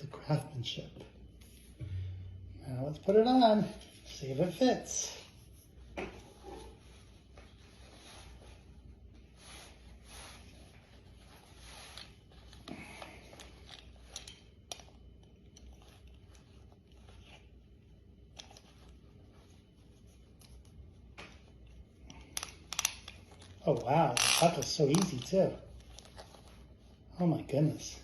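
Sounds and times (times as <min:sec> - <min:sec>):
leather belt rustling: 0:06.7 - 0:27.1.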